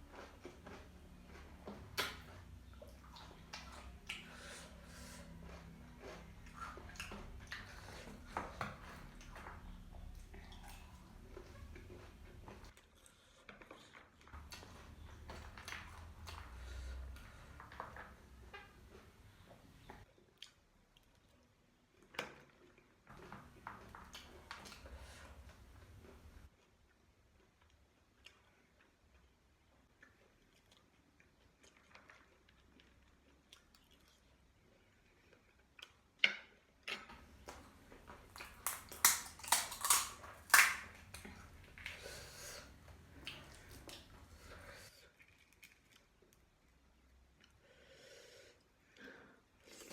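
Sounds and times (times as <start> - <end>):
chewing with crisp crunches: 0.0 - 47.6
crisp food crunching: 38.0 - 41.9, 45.1 - 46.6.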